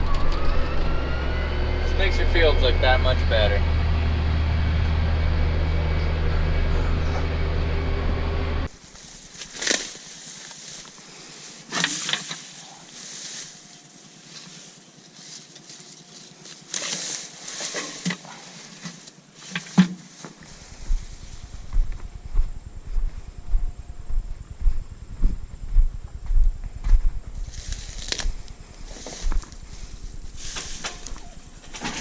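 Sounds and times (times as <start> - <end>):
tractor engine shredding: 0.0 - 10.9, 15.4 - 23.4, 26.6 - 32.0
sharp knocks and rustles: 11.6 - 13.5, 14.3 - 23.8, 24.6 - 32.0.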